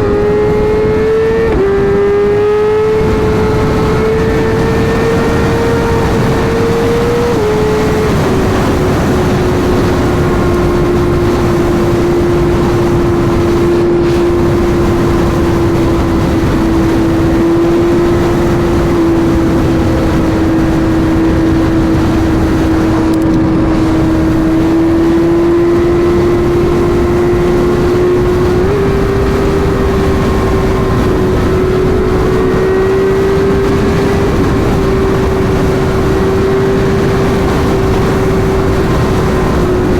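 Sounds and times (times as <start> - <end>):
motorcycle engine cruising: 0.0 - 39.9
wind rush: 0.0 - 39.9.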